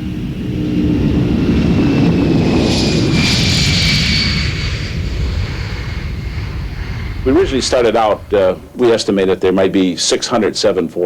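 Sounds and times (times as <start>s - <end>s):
jet engines rumbling and whining: 0.0s - 11.0s.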